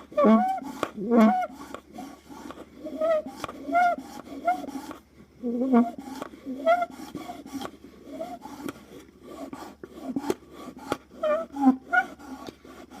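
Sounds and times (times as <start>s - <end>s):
short pitched squeals: 0.0s - 8.6s
straw rasping and scraping: 0.0s - 13.0s.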